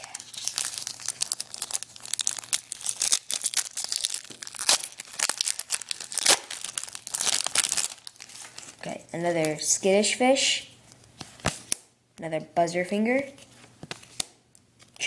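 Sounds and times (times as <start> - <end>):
wrapper tearing and crinkling: 0.0 - 9.5.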